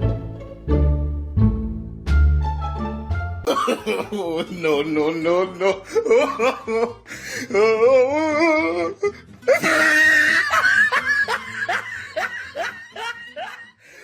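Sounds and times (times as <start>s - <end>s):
person laughing loudly: 3.5s - 14.0s.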